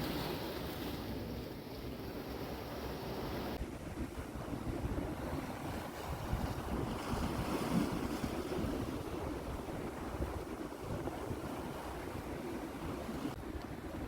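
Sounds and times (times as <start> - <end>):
sea waves washing on shore: 0.0 - 14.0
wind buffeting microphone: 1.5 - 14.0.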